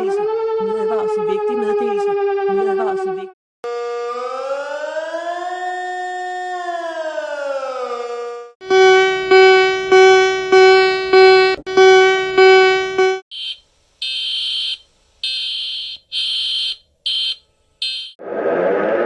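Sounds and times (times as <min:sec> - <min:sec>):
pitched electronic beep: 0:08.6 - 0:13.5, 0:15.3 - 0:18.2
shrill high-pitched beep: 0:08.6 - 0:14.2, 0:15.3 - 0:18.2.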